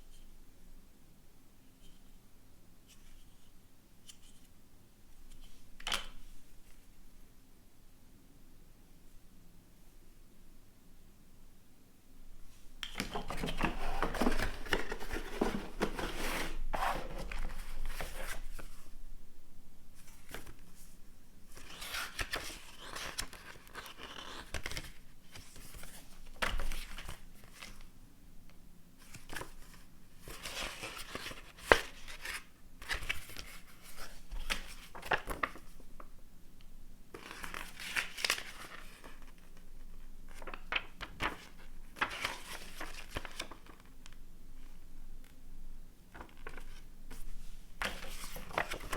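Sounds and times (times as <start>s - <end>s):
packaging rustling and crinkling: 12.9s - 18.7s.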